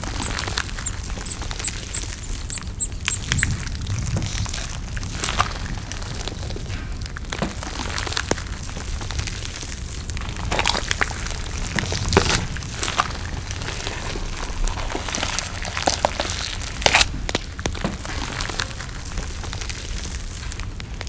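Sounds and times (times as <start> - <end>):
chewing and crunching: 0.0 - 21.0.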